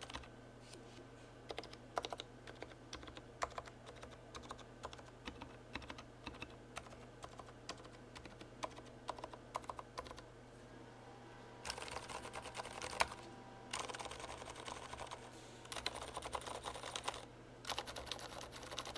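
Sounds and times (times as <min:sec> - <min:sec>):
typing on mechanical keyboard: 0:00.0 - 0:00.3, 0:01.5 - 0:10.2, 0:11.6 - 0:18.9.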